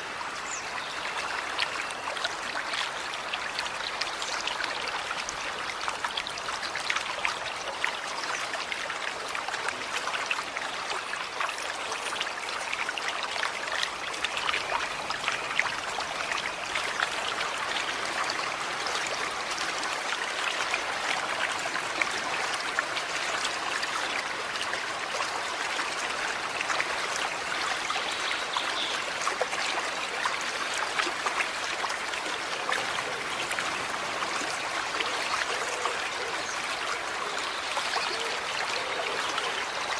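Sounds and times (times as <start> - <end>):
stream running over stones: 0.0 - 39.9.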